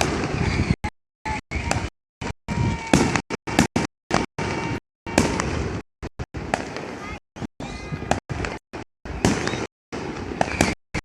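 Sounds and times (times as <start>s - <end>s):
voices: 0.0s - 1.9s, 6.6s - 9.7s
festival street noise: 0.0s - 11.0s.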